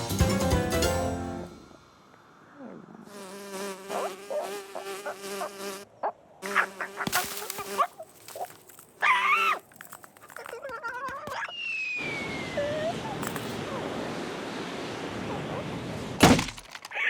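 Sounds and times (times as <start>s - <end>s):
insect-like buzzing drone: 2.9s - 5.8s.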